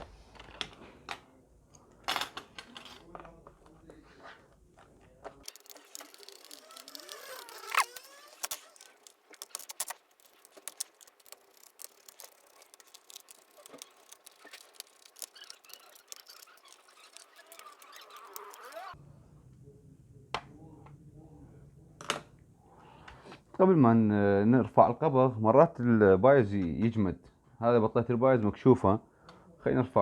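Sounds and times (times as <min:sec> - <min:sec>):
laptop screws and casing clicking: 0:05.4 - 0:18.8
short squeaks: 0:05.5 - 0:19.0.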